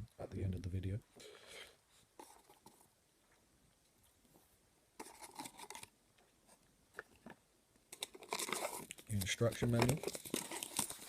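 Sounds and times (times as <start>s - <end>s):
packaging scraping rustle: 5.0s - 5.9s, 7.9s - 11.0s.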